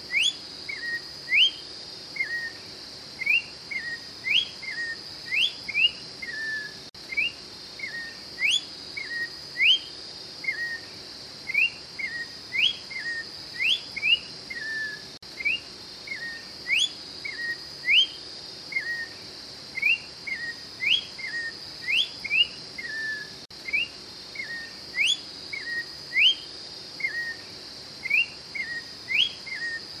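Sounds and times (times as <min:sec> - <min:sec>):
bird singing whistled phrase: 0:02.2 - 0:02.6, 0:03.2 - 0:09.9, 0:10.5 - 0:10.9, 0:11.5 - 0:18.2, 0:18.8 - 0:19.2, 0:19.8 - 0:26.4, 0:27.0 - 0:27.4, 0:28.1 - 0:29.8.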